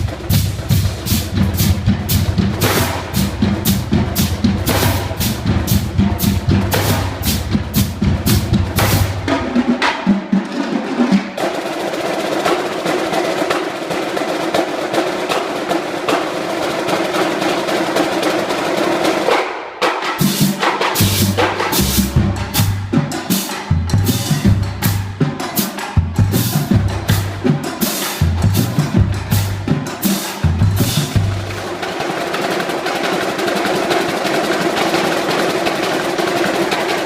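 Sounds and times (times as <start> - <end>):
bass drum notes: 0.0 - 9.6, 21.0 - 23.1, 23.7 - 25.3, 26.0 - 31.7
marching drum line: 0.0 - 37.0
snare drum roll: 0.0 - 37.0.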